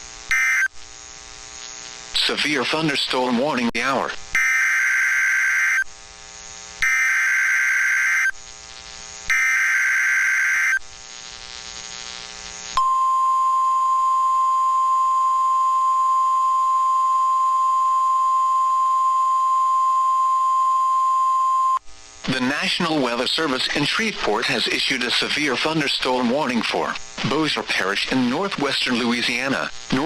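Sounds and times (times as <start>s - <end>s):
buzzy digital data bursts: 0.0s - 12.8s, 22.0s - 30.0s
steady warning alarm tone: 0.3s - 0.7s, 4.4s - 5.9s, 6.8s - 8.4s, 9.3s - 10.8s.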